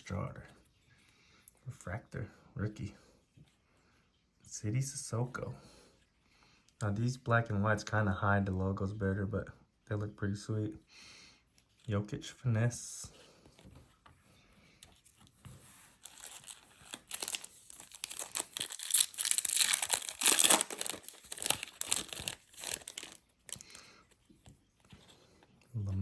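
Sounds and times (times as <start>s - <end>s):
card pack wrapper tearing and crinkling: 15.6s - 23.9s.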